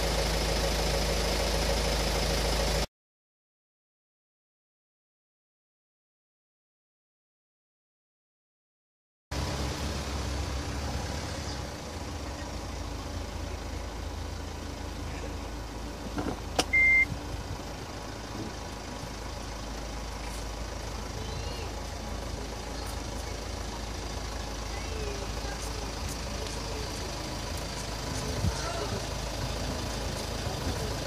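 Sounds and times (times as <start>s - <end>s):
car engine idling: 0.0s - 2.9s, 9.3s - 31.0s
short high beep: 16.7s - 17.1s.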